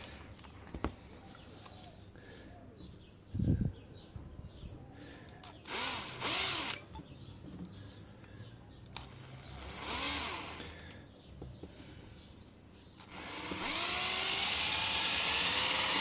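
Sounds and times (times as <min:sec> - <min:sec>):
electric drill whirring: 0:05.6 - 0:06.9, 0:09.0 - 0:10.9, 0:13.0 - 0:16.0.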